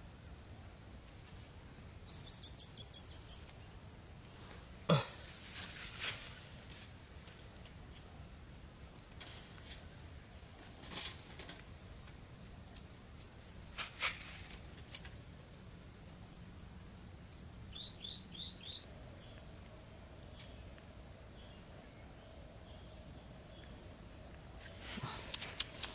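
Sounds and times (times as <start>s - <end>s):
rustles: 0.0s - 25.9s
bird chirping: 2.0s - 3.9s, 16.2s - 24.7s.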